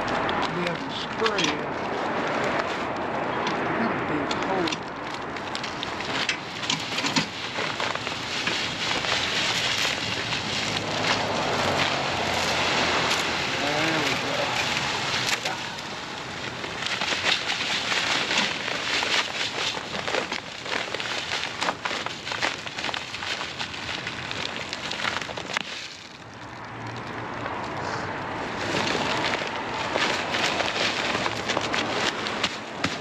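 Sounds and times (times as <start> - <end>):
granules pouring and rattling: 5.1 - 27.0, 28.6 - 32.8.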